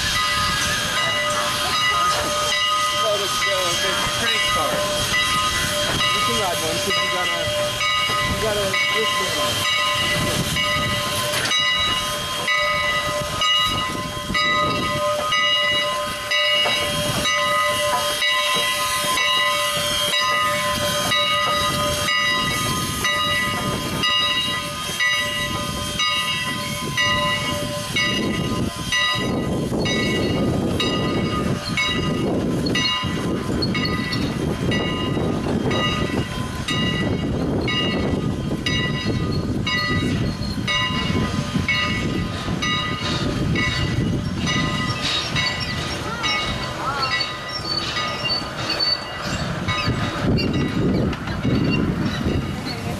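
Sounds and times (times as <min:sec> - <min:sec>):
steam locomotive hissing: 0:00.0 - 0:52.9.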